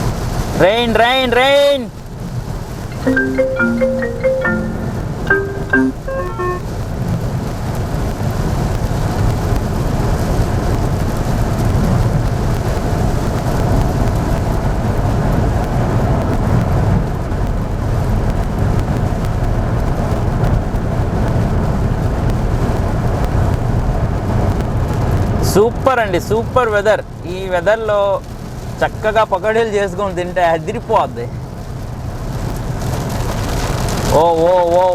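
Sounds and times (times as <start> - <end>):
rain hiss: 0.0 - 34.9
marimba-like chime notes: 3.0 - 6.6.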